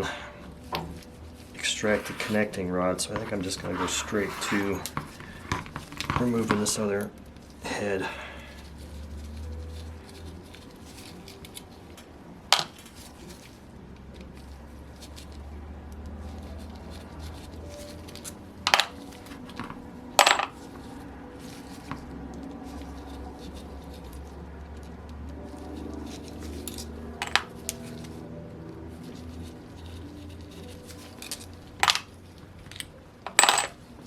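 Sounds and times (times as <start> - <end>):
metal tools clinking: 17.7 - 20.7, 26.1 - 28.1, 29.9 - 33.8.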